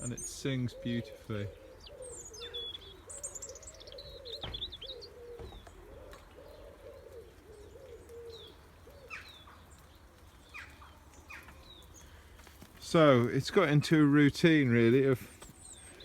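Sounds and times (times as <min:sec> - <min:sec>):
pigeon cooing: 0:00.0 - 0:09.6
robin singing: 0:00.0 - 0:16.0.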